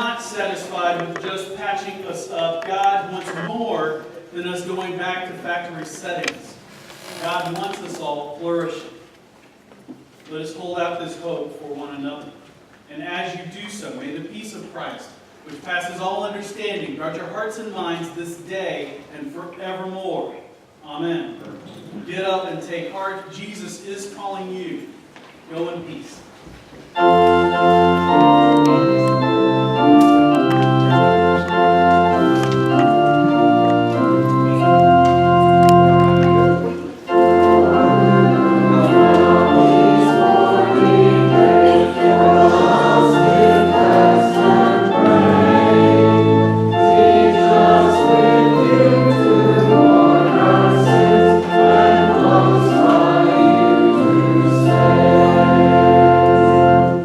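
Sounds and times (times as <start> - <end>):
church organ chords: 0.0 - 2.4, 26.9 - 57.0
choir singing: 27.0 - 35.0, 35.6 - 57.0.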